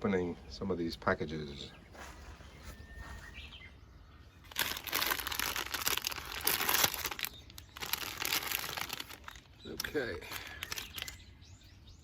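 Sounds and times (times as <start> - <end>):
packaging crinkling and tearing: 4.5 - 11.2.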